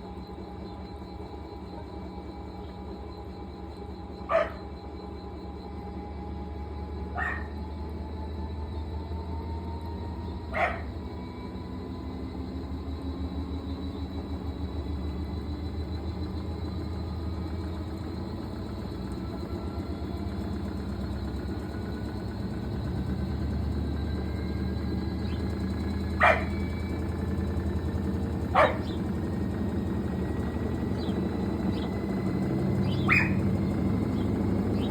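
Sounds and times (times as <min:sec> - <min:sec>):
washing machine motor whine: 0:00.0 - 0:34.9
dog bark: 0:04.3 - 0:04.6, 0:07.1 - 0:07.6, 0:10.5 - 0:11.0, 0:26.2 - 0:26.6, 0:28.5 - 0:29.0, 0:32.9 - 0:33.5
low hum: 0:22.7 - 0:34.9.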